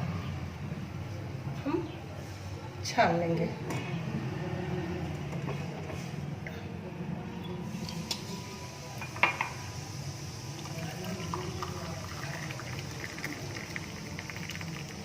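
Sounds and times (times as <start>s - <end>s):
liquid pouring through a strainer: 10.4s - 15.0s.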